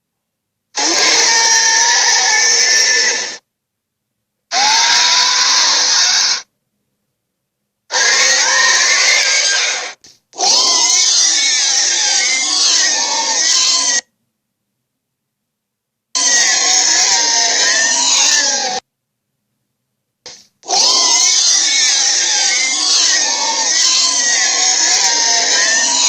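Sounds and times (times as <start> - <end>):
dragon roars: 0.8 - 3.4, 4.5 - 6.4, 7.9 - 14.0, 16.2 - 18.8, 20.7 - 26.0.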